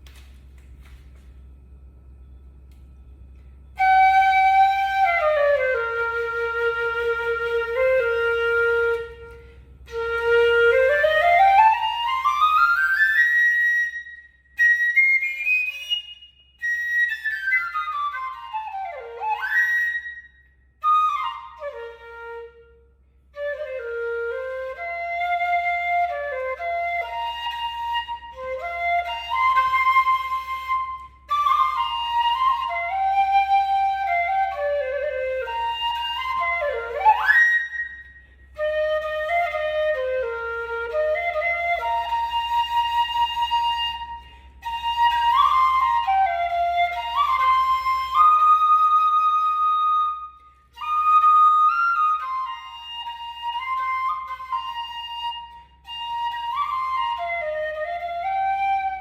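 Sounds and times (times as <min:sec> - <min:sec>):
bamboo flute melody: 0:02.9 - 0:59.0.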